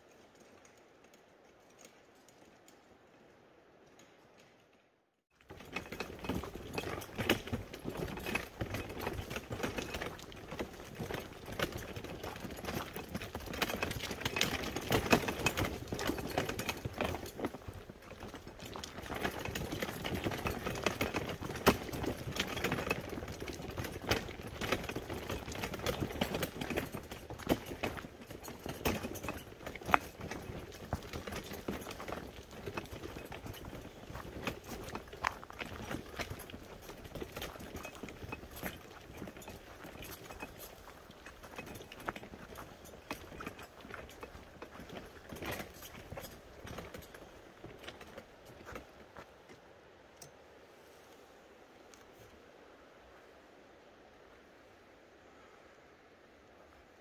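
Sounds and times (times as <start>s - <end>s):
footsteps crunching on trail: 5.4s - 49.6s.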